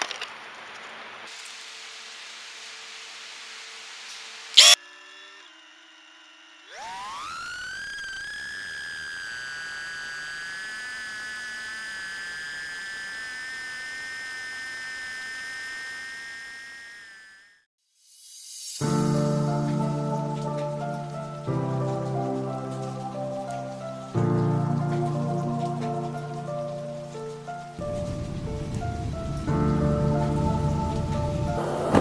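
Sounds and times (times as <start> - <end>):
drone motors whining: 4.3 - 17.7
sharp click: 4.6 - 4.8.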